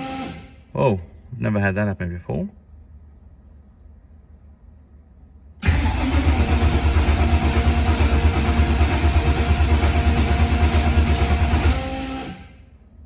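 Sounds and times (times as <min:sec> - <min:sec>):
engine cranking and starting: 0:05.6 - 0:12.6.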